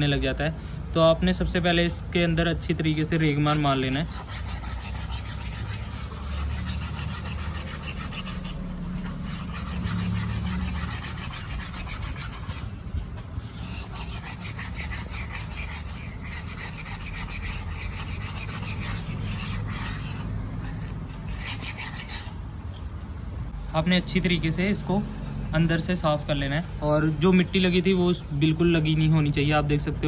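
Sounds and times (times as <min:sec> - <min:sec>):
sandpaper scrubbing: 0:03.2 - 0:12.7, 0:13.5 - 0:22.4.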